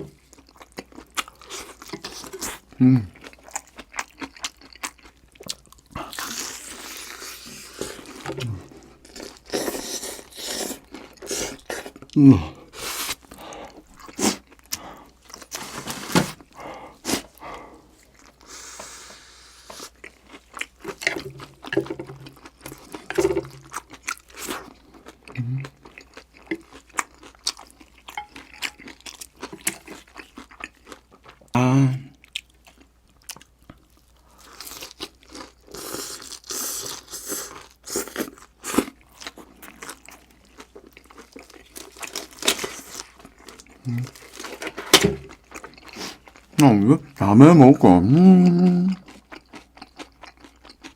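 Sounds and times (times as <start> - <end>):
crunching and chewing food: 0.0 - 50.9
person humming: 2.8 - 3.1, 12.2 - 12.7, 25.4 - 25.7, 48.0 - 49.0.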